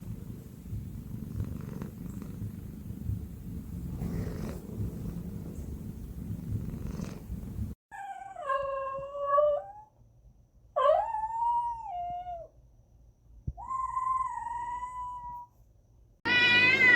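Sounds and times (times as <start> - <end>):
cat purring: 0.0 - 7.8.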